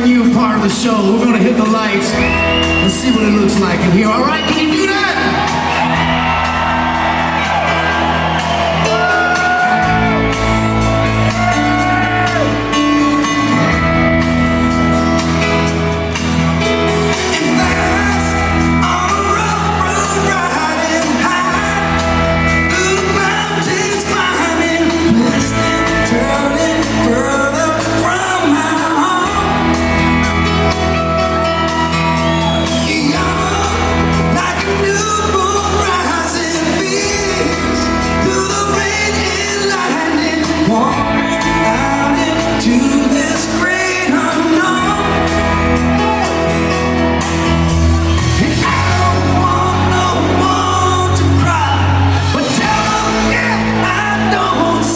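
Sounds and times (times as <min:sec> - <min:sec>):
live rock band playing: 0:00.0 - 0:54.9
crowd shouting and whooping: 0:02.1 - 0:54.9
lead vocal singing: 0:17.1 - 0:54.9.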